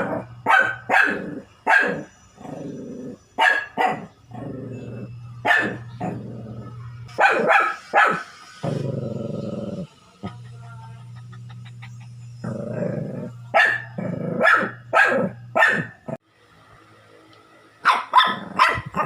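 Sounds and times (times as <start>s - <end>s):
dog barking: 0.0s - 2.1s, 3.4s - 4.1s, 5.4s - 6.2s, 7.1s - 8.4s, 13.5s - 16.2s, 17.8s - 19.0s
dog growling: 1.1s - 3.3s, 4.0s - 7.1s, 8.6s - 15.4s, 18.2s - 19.0s.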